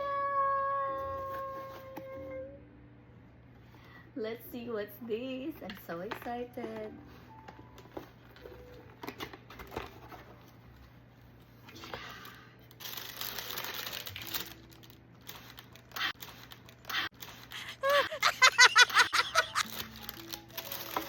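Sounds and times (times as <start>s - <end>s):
paper packaging crinkling: 6.0s - 11.1s, 11.8s - 21.0s.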